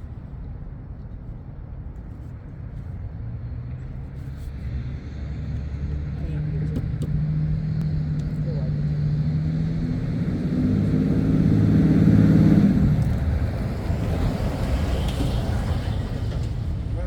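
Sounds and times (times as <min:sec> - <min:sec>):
vehicle engine passing by: 0:04.5 - 0:17.0.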